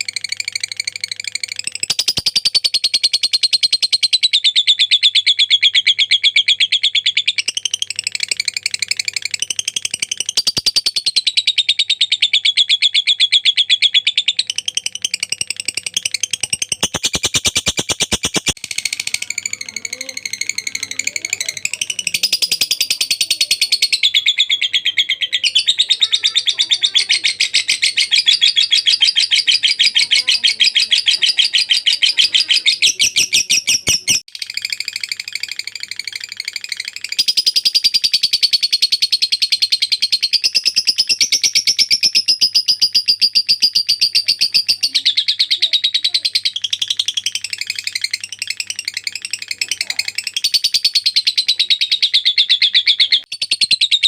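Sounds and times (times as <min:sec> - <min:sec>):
lovebird chattering: 0:00.0 - 0:54.0.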